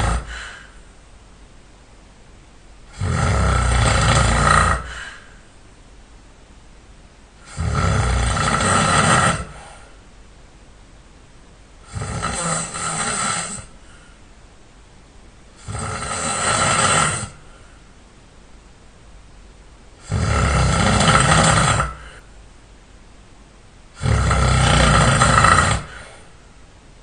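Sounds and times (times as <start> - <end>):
person snoring: 0.0 - 0.8, 2.9 - 5.4, 7.4 - 10.0, 11.8 - 14.1, 15.6 - 17.7, 20.0 - 22.3, 24.0 - 26.3.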